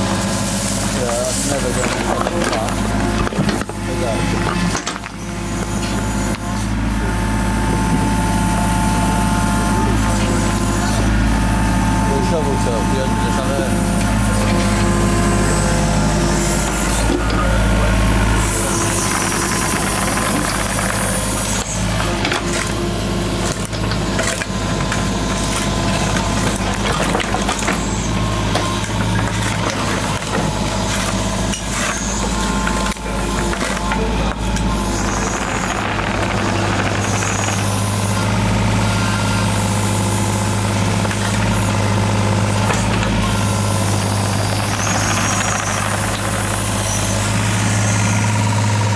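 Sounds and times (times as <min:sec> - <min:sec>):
heavy engine running: 0:00.0 - 0:48.9
knocks and scraping: 0:01.0 - 0:06.4, 0:23.4 - 0:38.0.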